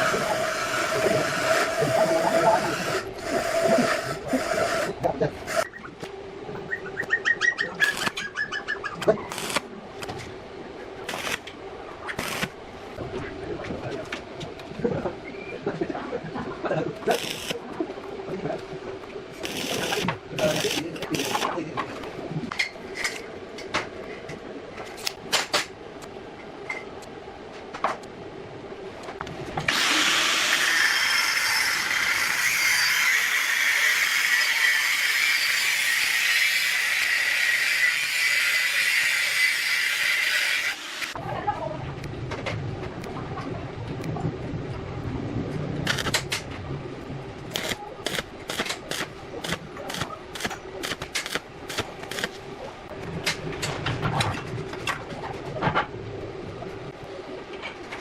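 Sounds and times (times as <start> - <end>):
power tool grinding metal: 29.7 - 41.2
sharp clicks and knocks: 47.5 - 52.3.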